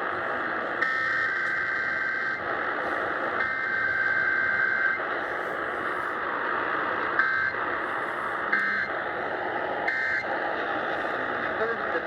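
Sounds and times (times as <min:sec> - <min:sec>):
radio noise: 0:08.4 - 0:09.0, 0:10.6 - 0:12.0.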